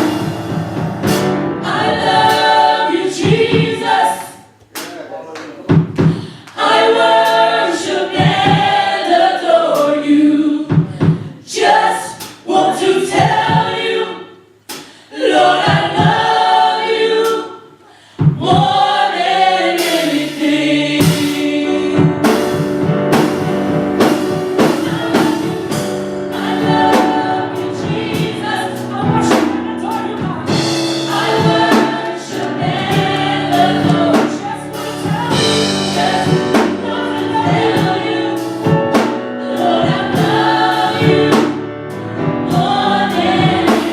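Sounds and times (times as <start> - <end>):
gospel choir singing: 0.0 - 43.9.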